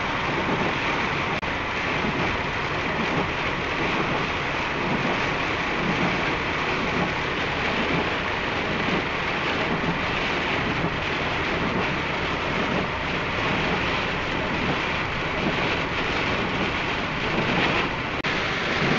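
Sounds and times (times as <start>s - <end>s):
heavy rain on a car: 0.0s - 18.9s
tyre and road noise: 0.0s - 18.9s.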